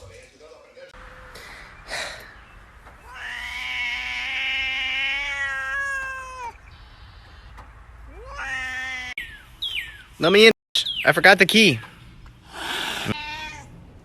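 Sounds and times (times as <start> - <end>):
cat meowing: 3.0 - 6.7, 8.1 - 9.2, 13.1 - 13.8.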